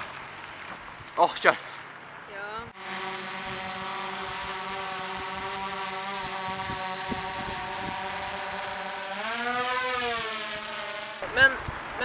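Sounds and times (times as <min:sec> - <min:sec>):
drone propellers whining: 0:02.8 - 0:11.3.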